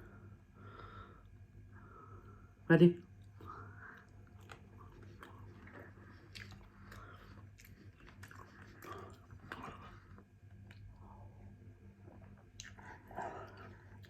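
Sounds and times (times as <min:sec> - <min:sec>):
faint chewing and biting: 0:03.1 - 0:14.0.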